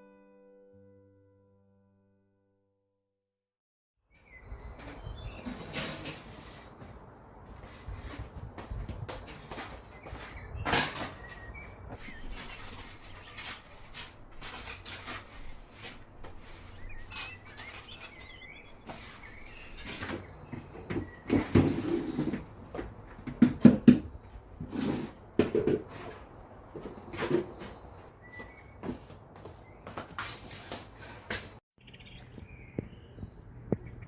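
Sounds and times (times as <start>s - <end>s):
rustling: 7.5s - 20.3s
knocks and clatter: 19.8s - 24.2s.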